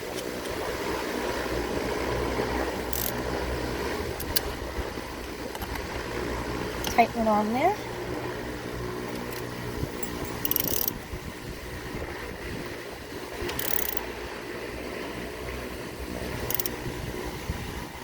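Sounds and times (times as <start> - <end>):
steady low hum: 0.0 - 18.0
ratchet wrench clicking: 2.9 - 3.3, 4.2 - 4.5, 6.8 - 7.0, 9.1 - 11.0, 13.4 - 14.1, 16.4 - 16.8.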